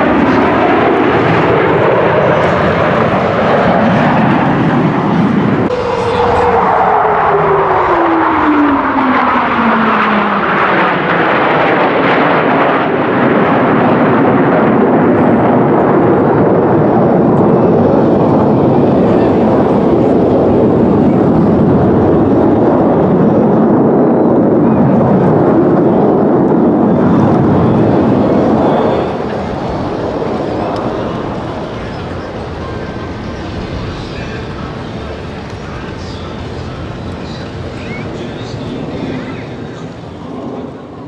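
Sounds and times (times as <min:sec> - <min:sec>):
jet aircraft flying past: 0:00.0 - 0:41.0.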